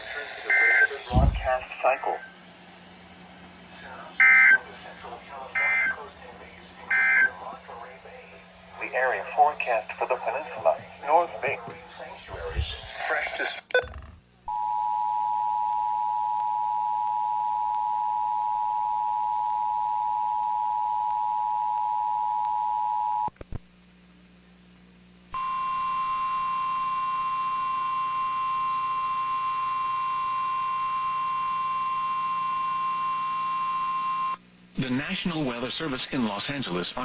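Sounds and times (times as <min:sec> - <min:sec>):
steady warning alarm tone: 0:00.5 - 0:02.4, 0:04.2 - 0:04.9, 0:05.5 - 0:06.2, 0:06.9 - 0:13.0
two-tone alert signal: 0:13.7 - 0:14.2.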